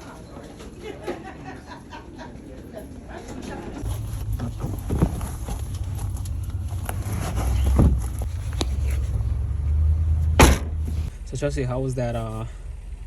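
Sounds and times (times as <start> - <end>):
car rumbling: 3.8 - 13.0
sharp thump: 10.3 - 11.1.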